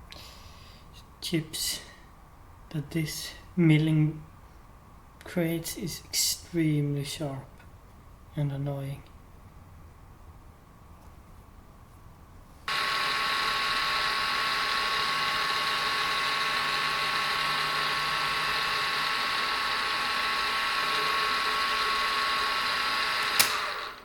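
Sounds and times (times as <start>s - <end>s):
milling machine whine: 12.7s - 24.0s
sharp click: 23.2s - 23.6s.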